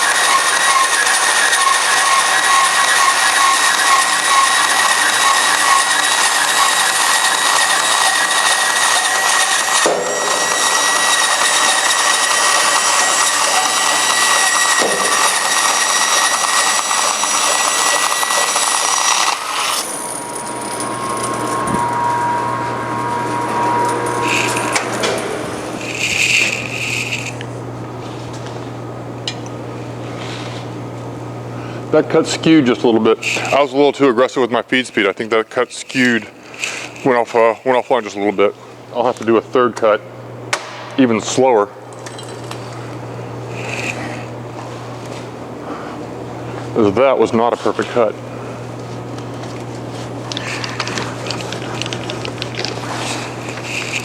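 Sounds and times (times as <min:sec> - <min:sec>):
bandsaw cutting plastic: 0:00.0 - 0:27.5, 0:35.9 - 0:38.0, 0:49.1 - 0:54.0
low steady machine hum: 0:00.0 - 0:35.0, 0:38.4 - 0:54.0.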